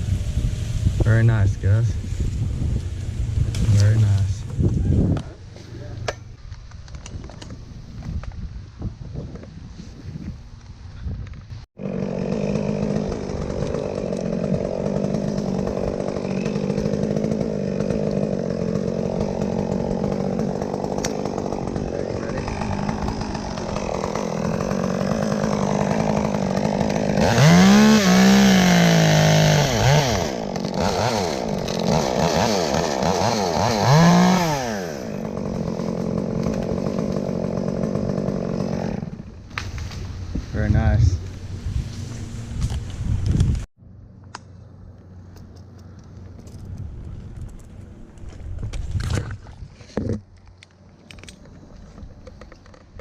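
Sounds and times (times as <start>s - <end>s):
chainsaw engine running: 11.8s - 40.0s.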